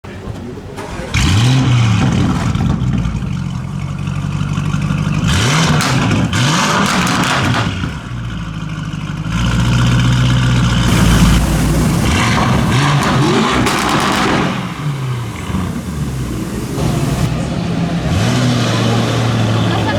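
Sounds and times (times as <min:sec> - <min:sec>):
car engine revving: 0:09.3 - 0:19.9
exhaust crackles and pops: 0:10.8 - 0:17.3.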